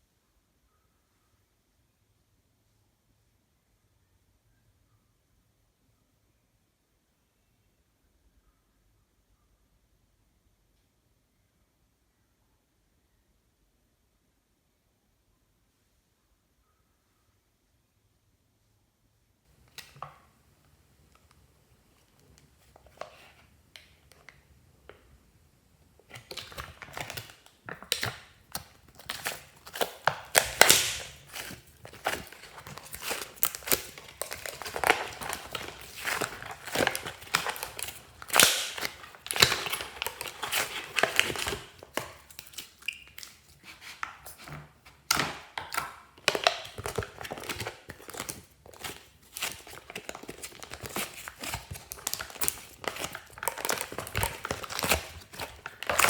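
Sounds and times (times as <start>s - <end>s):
slime squished by hand: 27.8s - 44.4s.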